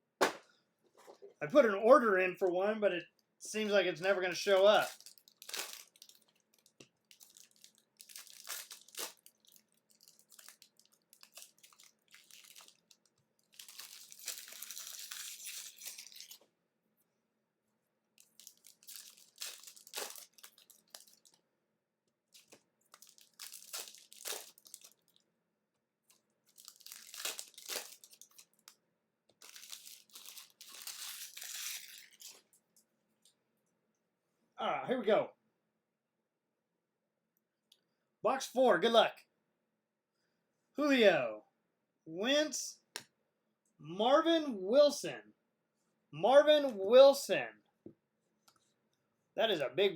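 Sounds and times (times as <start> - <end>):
plastic wrapping tearing and crinkling: 4.4 - 16.4, 18.2 - 21.4, 22.3 - 25.2, 26.1 - 32.6.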